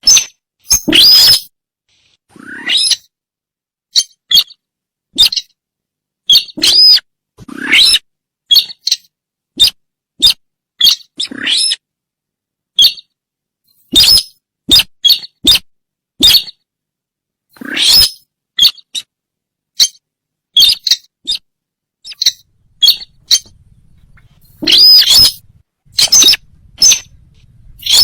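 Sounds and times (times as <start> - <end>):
squeaky bird calls: 0.0 - 1.5, 2.5 - 3.1, 3.9 - 4.6, 5.2 - 5.6, 6.3 - 11.8, 12.8 - 13.1, 13.9 - 16.6, 17.6 - 19.1, 19.8 - 20.0, 20.6 - 28.0.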